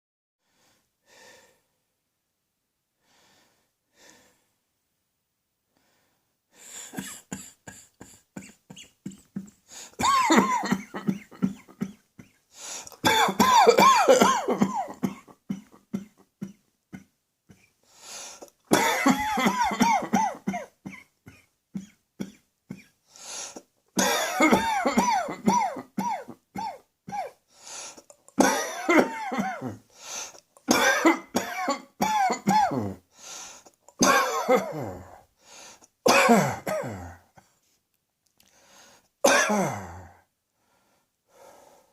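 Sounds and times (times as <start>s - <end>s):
person coughing: 6.8s - 17.7s, 18.4s - 22.9s, 24.0s - 27.4s, 28.1s - 29.8s, 30.6s - 33.0s, 33.9s - 35.2s, 36.1s - 37.3s, 39.3s - 40.2s.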